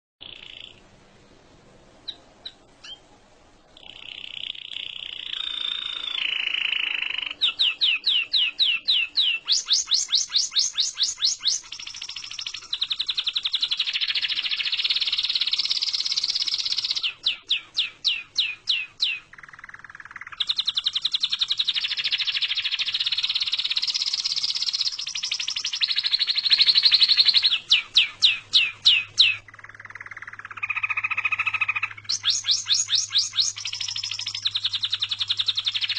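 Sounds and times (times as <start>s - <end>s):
birds calling: 0.2s - 0.9s, 2.0s - 3.1s, 3.8s - 35.9s.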